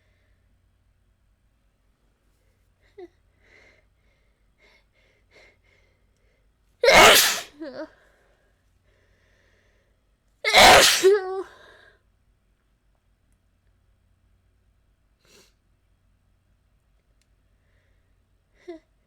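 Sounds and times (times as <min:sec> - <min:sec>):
woman sneezing: 0:06.8 - 0:07.9, 0:10.5 - 0:11.7
faint breaths: 0:07.9 - 0:10.1, 0:17.5 - 0:18.8.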